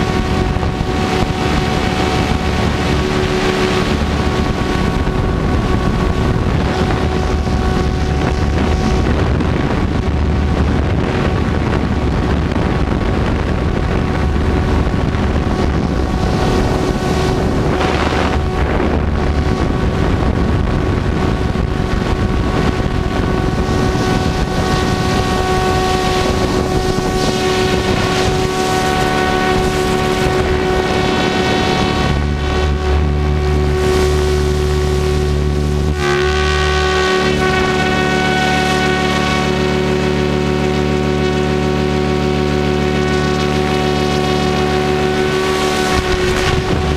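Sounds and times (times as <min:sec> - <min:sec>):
helicopter rotor drive whine: 0:00.0 - 0:46.9
wind on microphone: 0:00.0 - 0:46.9.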